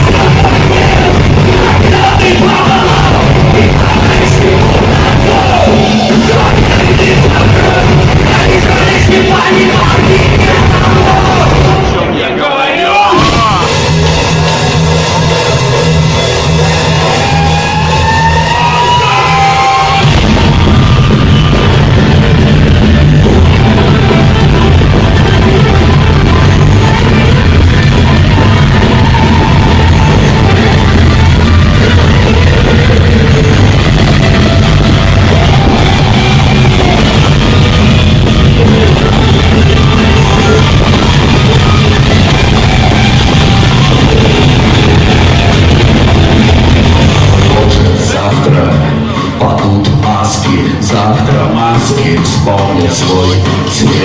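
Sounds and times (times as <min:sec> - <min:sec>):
rock band playing live: 0:00.0 - 0:54.0.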